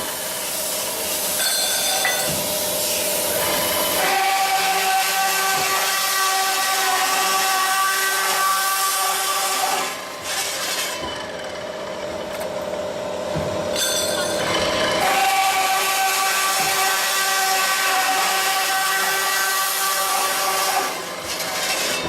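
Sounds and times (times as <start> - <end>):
circular saw cutting metal pipe: 0.0 - 13.0, 13.7 - 22.0.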